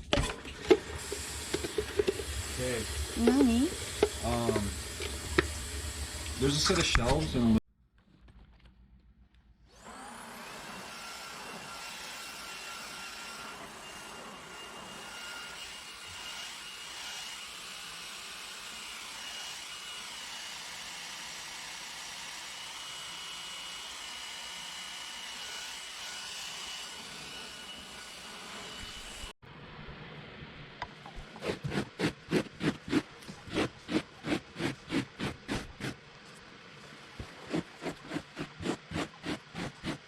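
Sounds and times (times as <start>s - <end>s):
vacuum cleaner running: 0.2s - 7.5s, 9.8s - 15.5s, 26.7s - 29.3s.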